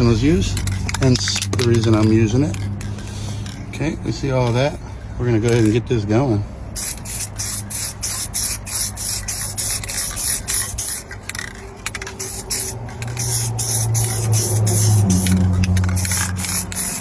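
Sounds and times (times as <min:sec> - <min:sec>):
aerosol spray hissing: 0:06.8 - 0:11.0, 0:12.2 - 0:15.4, 0:16.0 - 0:17.0.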